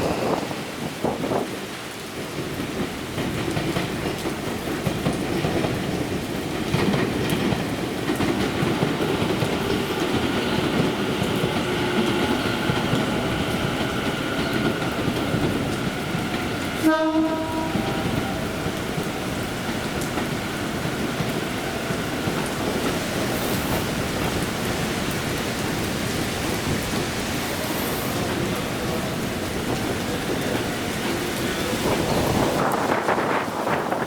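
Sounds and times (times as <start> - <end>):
heavy rain: 0.0 - 34.0
train wheels on rail: 0.0 - 34.0
train horn tone: 10.5 - 13.7, 16.7 - 19.0.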